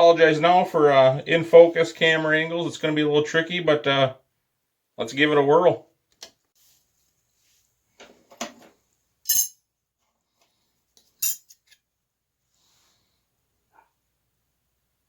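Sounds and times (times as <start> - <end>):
metal tools clinking on workbench: 9.3 - 9.6, 11.2 - 11.8.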